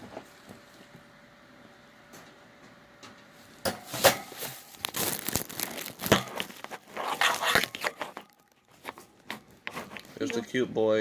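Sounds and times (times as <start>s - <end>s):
paper crumpling and tearing: 4.0s - 10.4s.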